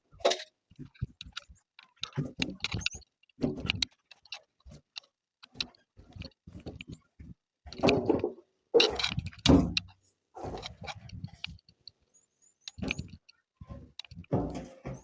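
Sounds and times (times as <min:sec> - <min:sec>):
hands handling a container: 0:12.7 - 0:15.0.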